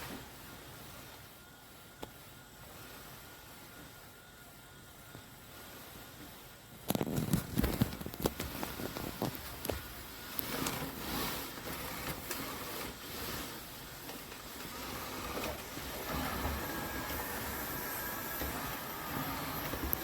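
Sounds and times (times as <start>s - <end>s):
robot vacuum cleaner whirring: 7.6s - 20.0s.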